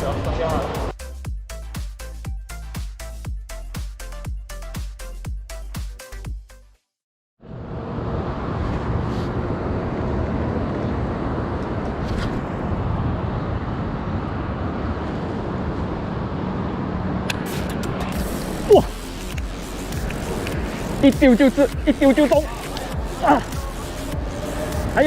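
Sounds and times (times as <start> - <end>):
steady rushing outdoor noise: 0.0 - 0.9, 7.4 - 25.0.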